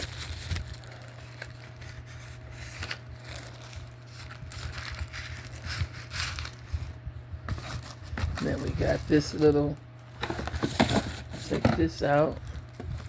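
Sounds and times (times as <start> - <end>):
packaging crinkling and rustling: 0.0 - 13.0
steady low hum: 0.0 - 13.0.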